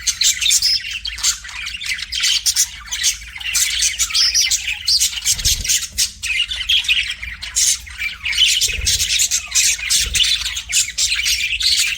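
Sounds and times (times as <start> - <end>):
budgerigar chirping and squawking: 0.0 - 11.9.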